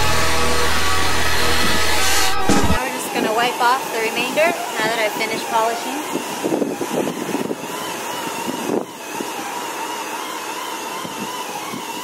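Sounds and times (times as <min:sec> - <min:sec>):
motor whine with hiss: 0:00.0 - 0:12.0
towel rubbing car paint: 0:02.9 - 0:12.0.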